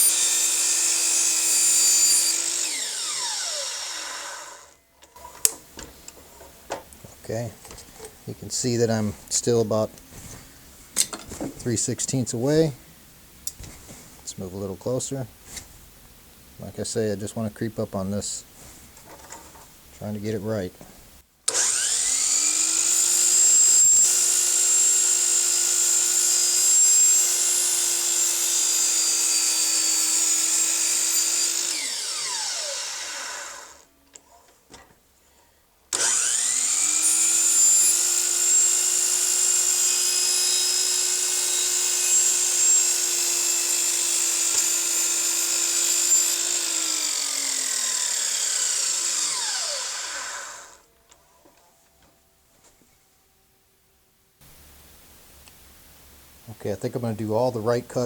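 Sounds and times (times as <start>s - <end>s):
electric saw whining: 0.0s - 4.8s, 21.5s - 33.9s, 35.9s - 50.9s.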